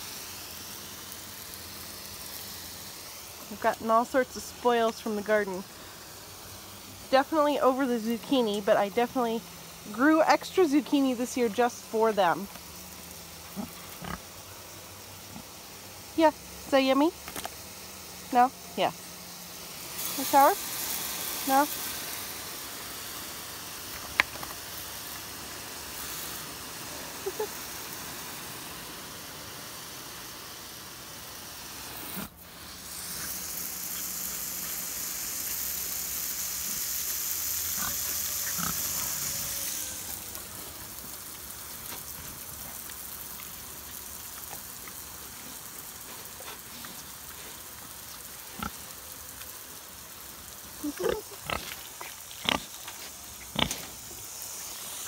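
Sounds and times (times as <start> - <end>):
garden hose spraying water: 0.0 - 55.0
pigs grunting: 13.4 - 14.4, 37.7 - 40.2, 50.8 - 52.8, 53.5 - 54.0.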